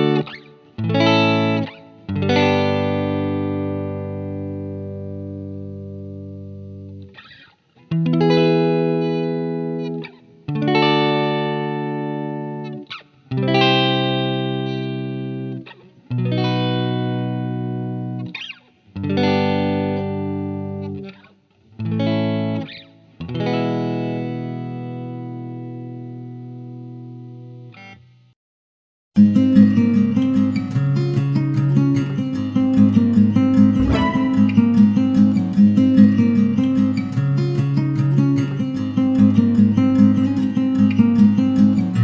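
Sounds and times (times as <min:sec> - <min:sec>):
electric guitar chords: 0:00.0 - 0:18.4, 0:19.0 - 0:21.2, 0:29.2 - 0:42.0.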